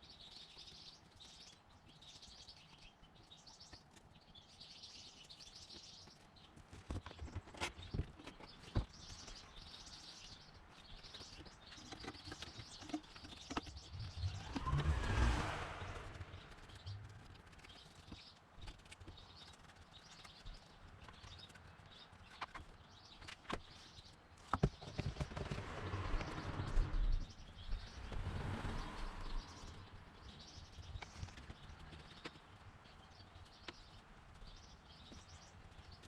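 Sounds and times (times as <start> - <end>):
small birds chirping: 0.0 - 36.0
low rushing swell: 14.0 - 16.9, 25.8 - 30.2.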